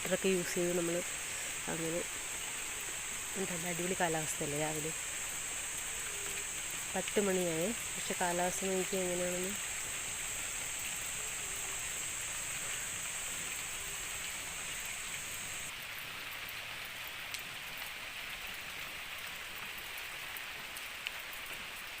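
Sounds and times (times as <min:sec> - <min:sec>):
steady rain falling: 0:00.0 - 0:22.0
faint drip ticks: 0:05.3 - 0:08.1.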